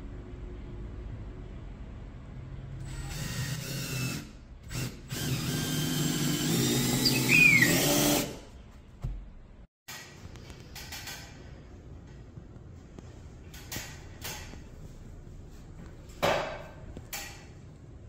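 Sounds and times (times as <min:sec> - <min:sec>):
power drill running: 0:02.8 - 0:08.4.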